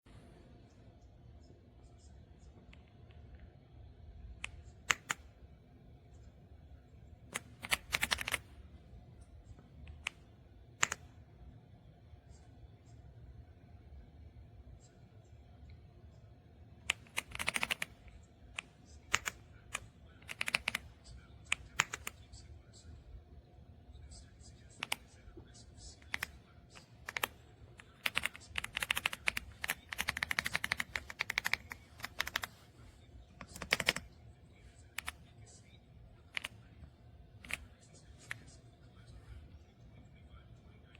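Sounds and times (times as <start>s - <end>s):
mechanical keyboard keystrokes: 4.4s - 5.2s, 7.3s - 8.5s, 10.8s - 11.1s, 16.9s - 18.0s, 18.6s - 20.9s, 21.5s - 22.2s, 26.0s - 26.4s, 27.0s - 32.6s, 33.4s - 34.1s, 35.0s - 35.2s, 36.3s - 36.6s.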